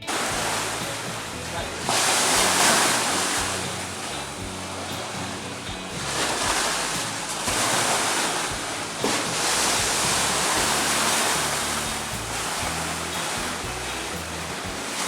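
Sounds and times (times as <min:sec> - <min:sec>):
waves washing: 0:00.0 - 0:15.0.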